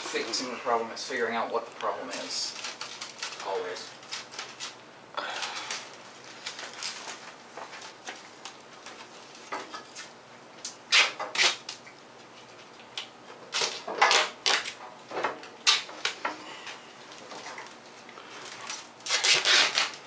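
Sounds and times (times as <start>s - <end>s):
foil crinkling and rustling: 1.8s - 10.2s, 12.6s - 14.8s, 17.1s - 20.0s.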